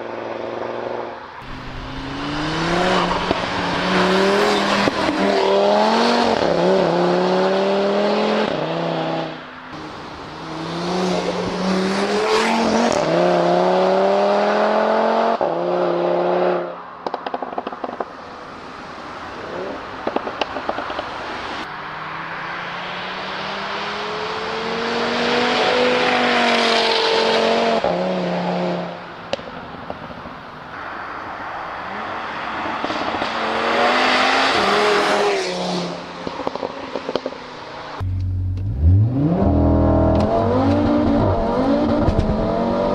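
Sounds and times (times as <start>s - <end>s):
car engine revving hard: 1.4s - 16.7s, 38.1s - 42.9s
exhaust crackling pops and bangs: 17.0s - 18.2s, 20.0s - 21.1s, 40.1s - 42.5s.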